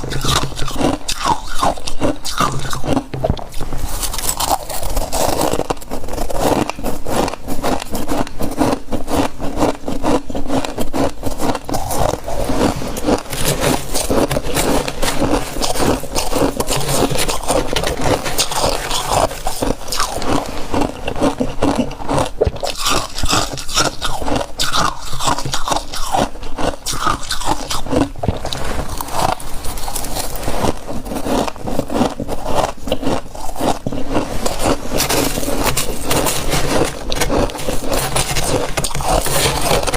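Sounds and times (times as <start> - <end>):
frost crunching when chewed: 0.0 - 39.9
scraping: 11.3 - 24.0, 33.3 - 39.9.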